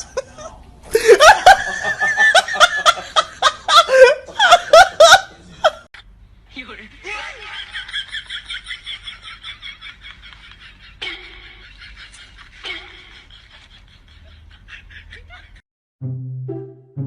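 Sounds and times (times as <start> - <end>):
person laughing: 0.0 - 5.9, 9.1 - 15.6.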